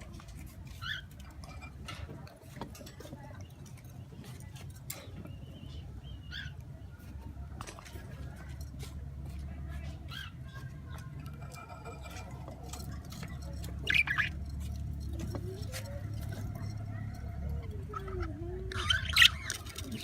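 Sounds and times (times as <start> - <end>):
bird squawking: 13.8 - 14.4, 17.8 - 20.0.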